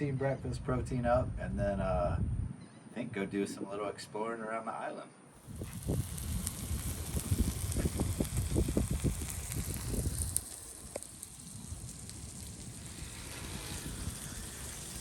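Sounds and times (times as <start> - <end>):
wind rumble on microphone: 0.5 - 2.6, 5.4 - 15.0
food sizzling in a skillet: 5.4 - 15.0.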